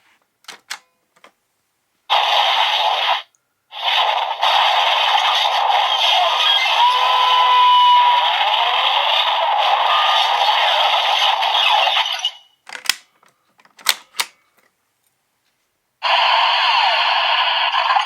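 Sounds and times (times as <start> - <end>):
toy electronic sound effect: 4.0 - 12.5.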